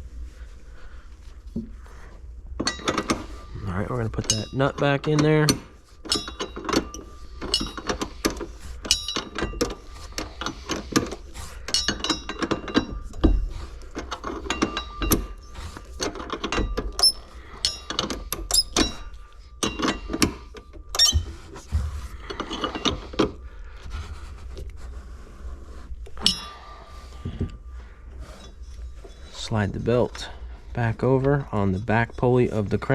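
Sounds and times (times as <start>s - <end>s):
wrench clicking on metal parts: 4.0s - 21.3s.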